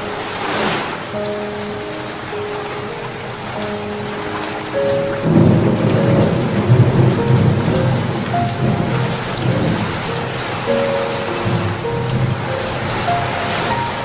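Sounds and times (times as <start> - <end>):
steady rain falling: 0.0 - 14.0
thunder rumbling: 3.3 - 14.0.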